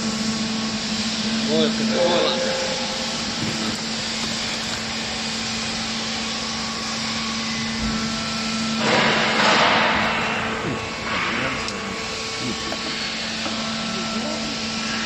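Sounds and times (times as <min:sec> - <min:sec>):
hydraulic press motor and pump: 0:00.0 - 0:15.0.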